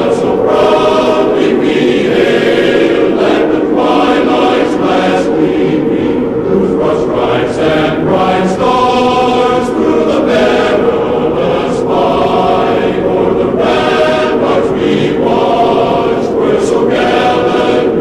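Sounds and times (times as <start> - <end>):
choir singing an anthem: 0.0 - 18.0.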